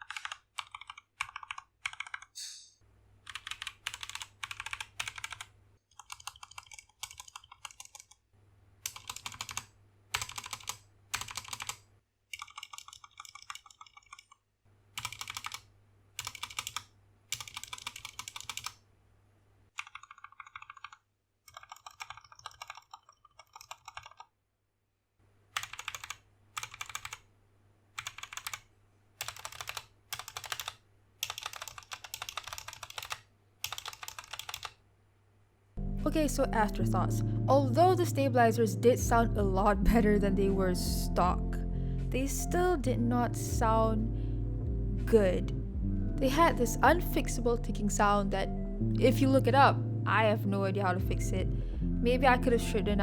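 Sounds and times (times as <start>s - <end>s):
mechanical keyboard typing: 0.0s - 2.3s, 3.3s - 8.2s, 8.8s - 14.4s, 15.0s - 15.6s, 16.2s - 18.8s, 19.8s - 24.3s, 25.6s - 27.2s, 28.0s - 28.6s, 29.2s - 34.8s.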